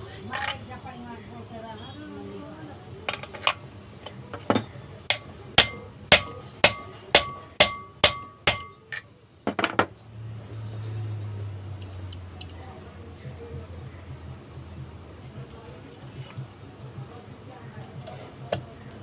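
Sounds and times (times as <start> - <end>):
hammer tapping on metal: 4.4 - 9.9.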